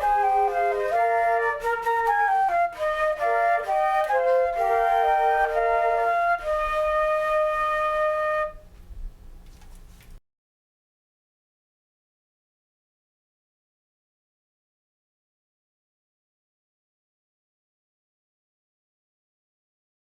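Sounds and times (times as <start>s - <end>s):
flute melody: 0.0s - 8.7s.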